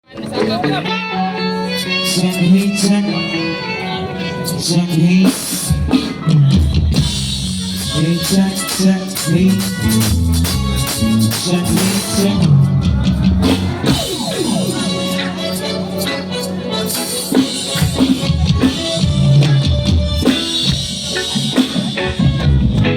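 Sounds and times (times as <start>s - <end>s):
live band playing: 0.0s - 22.9s
steady percussion: 5.2s - 22.9s
deep bass: 5.8s - 16.2s, 22.0s - 22.9s.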